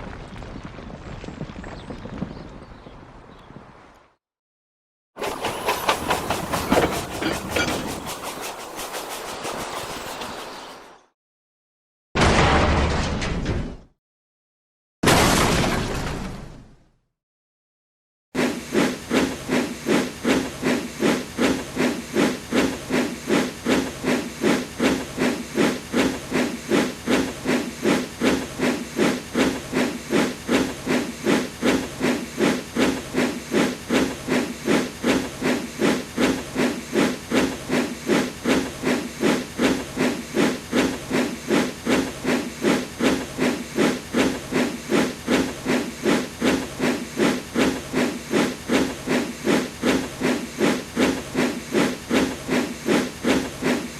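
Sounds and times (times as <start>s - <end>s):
steam locomotive chuffing: 5.2s - 10.5s, 18.4s - 53.9s.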